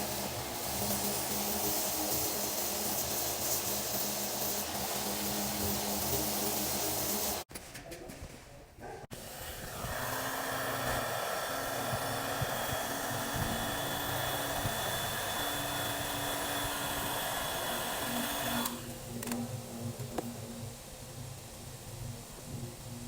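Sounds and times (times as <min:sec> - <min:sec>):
handheld power tool running: 0:00.0 - 0:07.5, 0:09.2 - 0:18.9.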